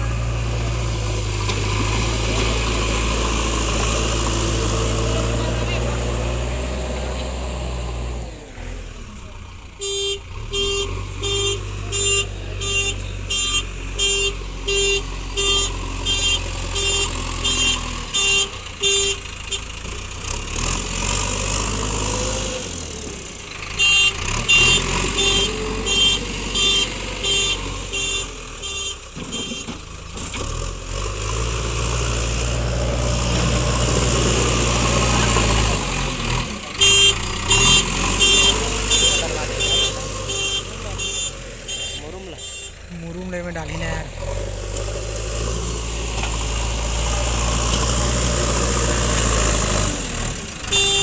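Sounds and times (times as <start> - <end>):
diesel engine running: 0.0 - 51.0
reversing alarm beeping: 36.8 - 42.8.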